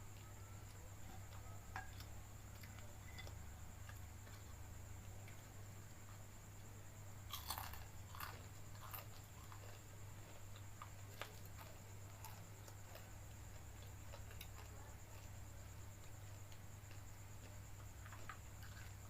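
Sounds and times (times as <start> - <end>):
low electrical hum: 0.0 - 19.0
person chewing food: 7.3 - 19.0.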